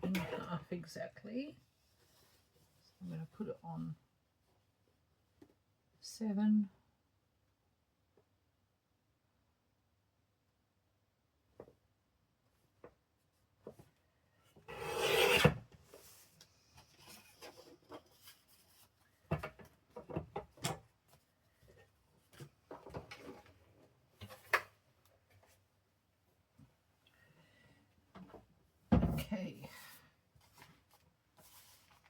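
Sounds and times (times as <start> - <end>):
paper guillotine cutting paper: 14.7 - 15.6
clicks and paper rustles: 30.4 - 32.0.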